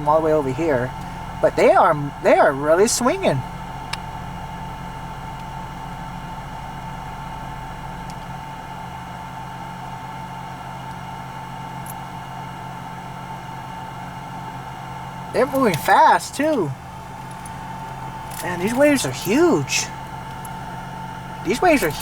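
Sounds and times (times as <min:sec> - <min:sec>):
steady mechanical hum: 0:00.0 - 0:22.0.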